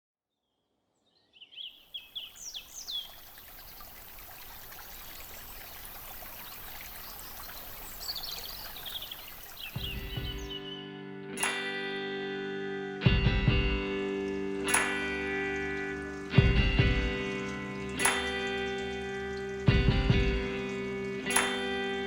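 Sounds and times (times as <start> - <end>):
birds chirping: 1.4 - 10.9, 14.0 - 22.0
stream water rushing: 1.9 - 10.6, 14.1 - 22.0
music: 9.7 - 22.0.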